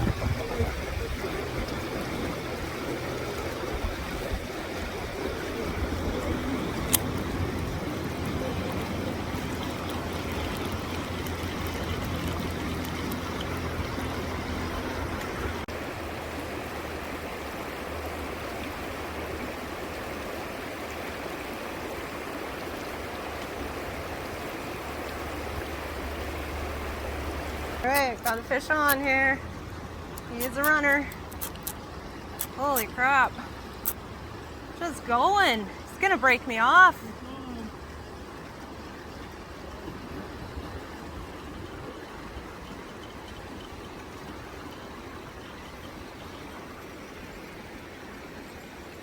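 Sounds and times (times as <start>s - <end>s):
river current rushing: 0.0s - 49.0s
sharp click: 30.2s - 31.8s.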